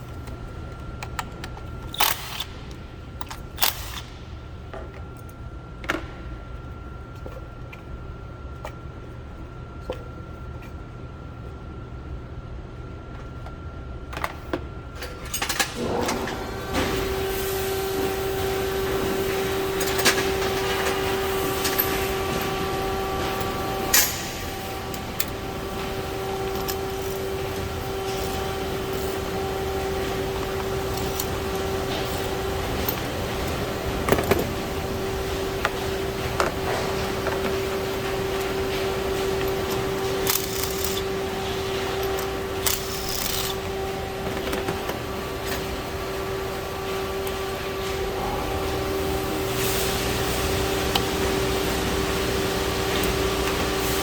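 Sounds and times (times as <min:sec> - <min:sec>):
steady machine hum: 0:00.0 - 0:54.0
hand tools clicking and knocking: 0:30.3 - 0:34.7.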